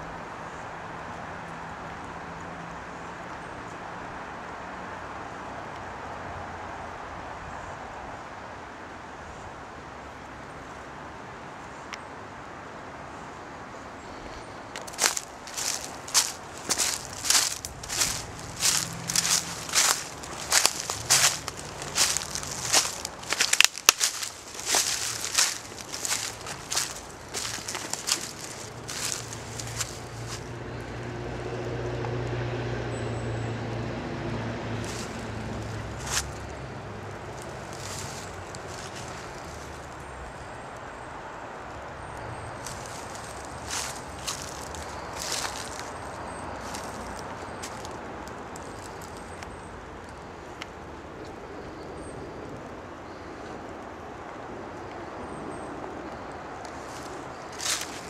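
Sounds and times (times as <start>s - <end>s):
vehicle engine passing by: 14.1s - 39.9s, 42.6s - 49.3s
crunching footstep: 14.7s - 30.5s, 34.8s - 40.0s, 42.6s - 49.5s, 56.6s - 58.0s
brook water rushing: 14.8s - 30.4s.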